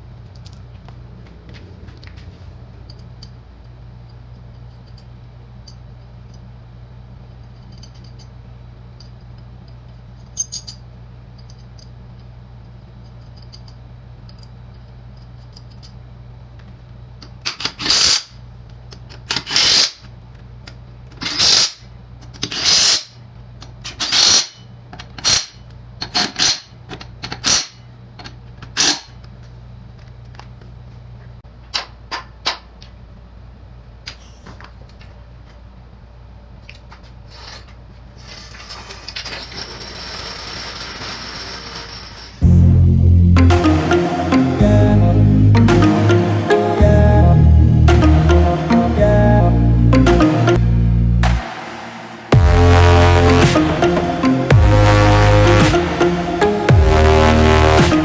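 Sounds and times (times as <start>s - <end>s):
steady low hum: 0.0s - 17.2s, 42.4s - 58.0s.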